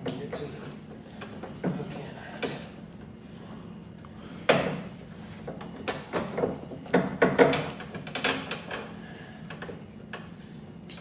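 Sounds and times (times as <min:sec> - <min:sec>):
window motor knocking against metal: 0:05.6 - 0:08.7.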